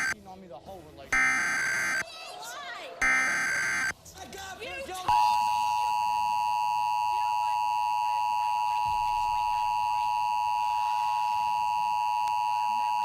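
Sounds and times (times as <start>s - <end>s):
steady two-tone alert tone: 1.2s - 2.0s, 3.0s - 3.9s, 5.1s - 13.0s.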